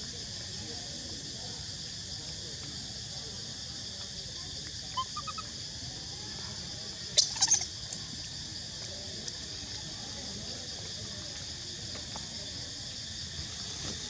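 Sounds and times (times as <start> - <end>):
insects droning: 0.0 - 14.0
monkey squealing: 5.0 - 5.5, 7.2 - 8.0.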